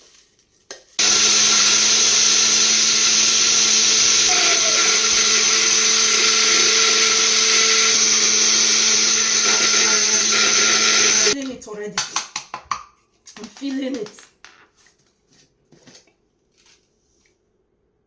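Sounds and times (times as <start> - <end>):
electric blender whirring: 1.0 - 11.4.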